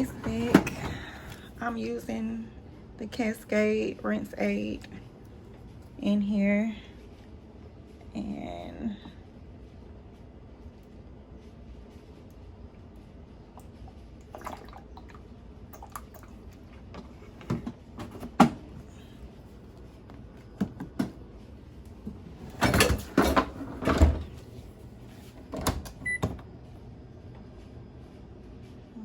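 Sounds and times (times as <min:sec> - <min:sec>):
dishwasher clicks and knocks: 0:00.0 - 0:01.1, 0:22.5 - 0:24.4.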